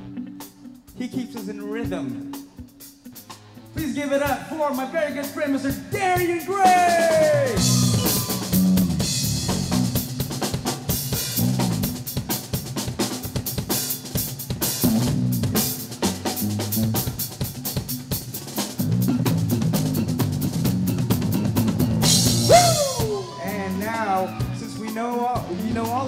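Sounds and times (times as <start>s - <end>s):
live drum kit playing: 0.0s - 26.0s
low bass notes: 7.0s - 10.2s, 11.4s - 12.0s, 14.8s - 17.2s, 18.8s - 24.7s.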